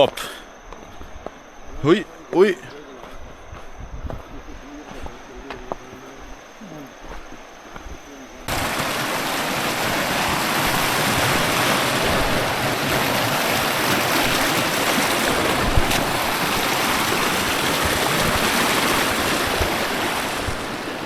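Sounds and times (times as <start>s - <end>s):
river water rushing over rocks: 8.5s - 21.0s.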